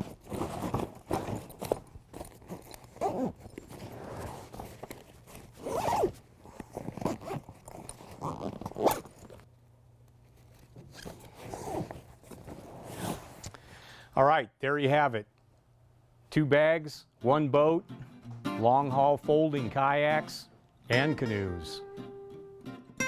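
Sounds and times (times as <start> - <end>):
bag zipper being pulled: 0.0 - 9.4, 12.6 - 13.4
bag rustling and handling: 0.0 - 9.5, 10.2 - 13.7.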